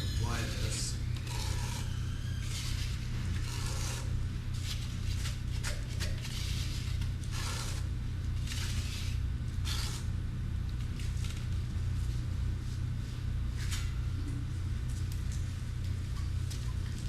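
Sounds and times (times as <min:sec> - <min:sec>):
steady low hum: 0:00.0 - 0:17.0
knife scraping a mud tray: 0:01.2 - 0:07.9.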